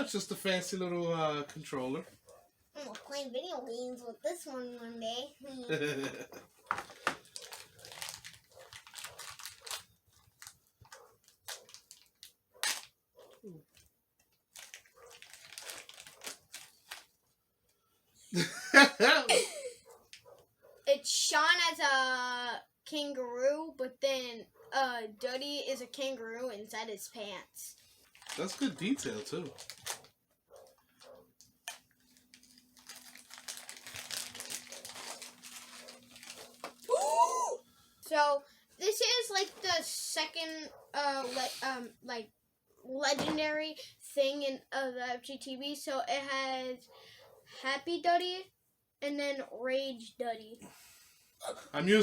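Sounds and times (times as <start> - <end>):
packaging rustling and crinkling: 6.6 - 12.9, 13.7 - 17.2, 27.8 - 37.0.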